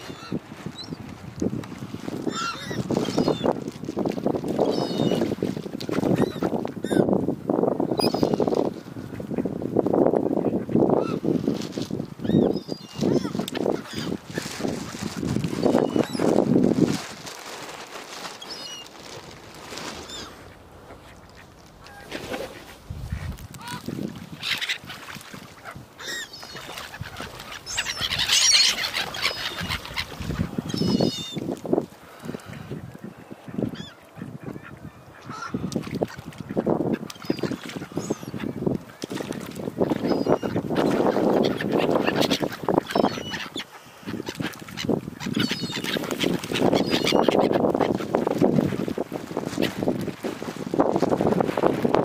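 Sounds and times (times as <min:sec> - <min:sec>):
waterbirds squealing calls: 0:00.0 - 0:01.0, 0:02.2 - 0:03.6, 0:04.4 - 0:07.1, 0:07.9 - 0:09.5, 0:10.9 - 0:11.3, 0:12.2 - 0:16.4, 0:18.3 - 0:18.9, 0:19.8 - 0:31.6, 0:32.2 - 0:49.8
wind noise on microphone: 0:00.0 - 0:18.2, 0:21.7 - 0:52.0.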